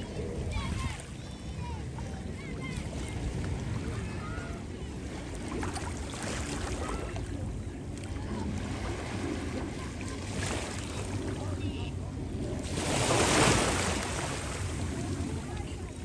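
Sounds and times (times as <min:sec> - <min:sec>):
wind rumble on microphone: 0:00.0 - 0:16.0
sea waves washing onto beach: 0:12.6 - 0:16.0.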